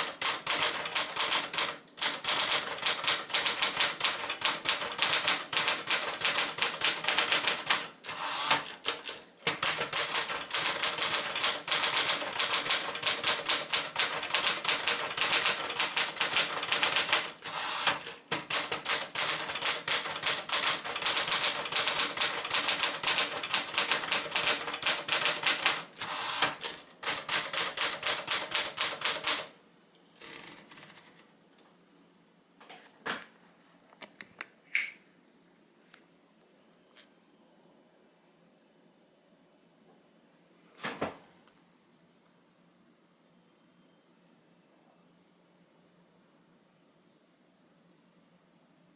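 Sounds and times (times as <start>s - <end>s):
typewriter keystroke clacks: 0.0s - 7.9s, 8.5s - 29.5s.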